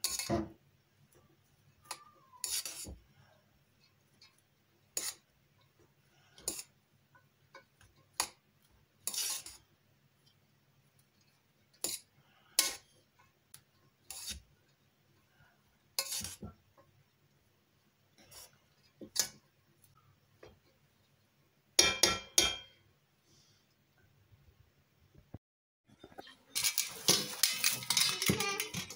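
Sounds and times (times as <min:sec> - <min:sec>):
cutlery and dishes clinking: 0:00.0 - 0:00.5, 0:26.1 - 0:28.9.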